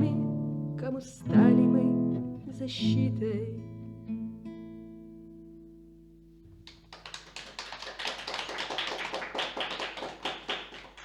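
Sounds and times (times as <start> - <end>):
audience applauding: 6.6 - 11.0.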